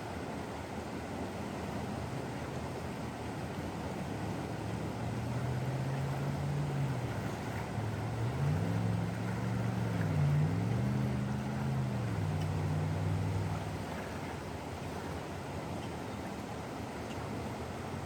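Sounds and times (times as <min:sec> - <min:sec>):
vehicle engines passing: 0:03.8 - 0:18.0.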